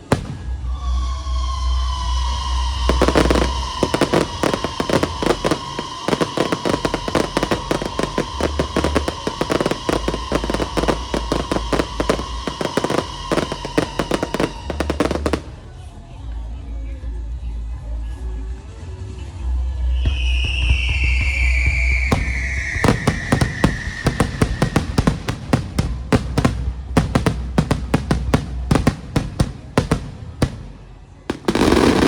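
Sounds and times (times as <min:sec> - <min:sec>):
fireworks crackling bangs: 0:00.0 - 0:01.1, 0:02.0 - 0:15.7, 0:21.0 - 0:32.0
high firework whistle: 0:00.0 - 0:15.9, 0:19.9 - 0:32.0.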